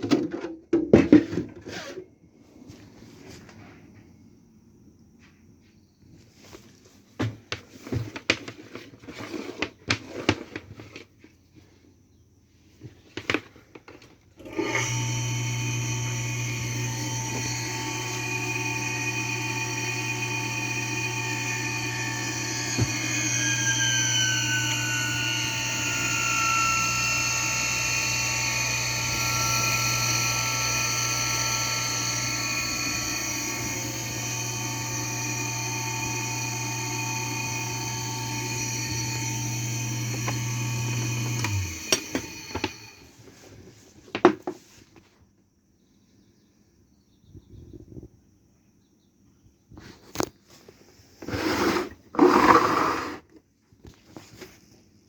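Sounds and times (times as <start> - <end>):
pump motor humming and whining: 14.4 - 43.1.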